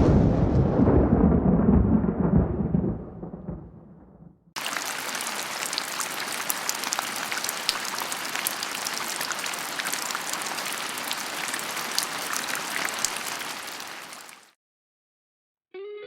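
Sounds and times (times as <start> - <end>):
heavy rain falling: 4.6 - 14.6
raindrops ticking on a surface: 4.6 - 14.6.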